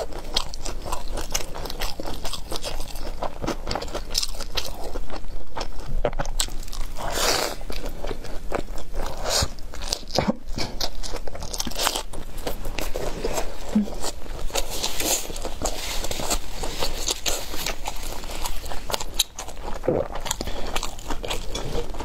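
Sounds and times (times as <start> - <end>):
crunchy biting and chewing: 0.0 - 22.0.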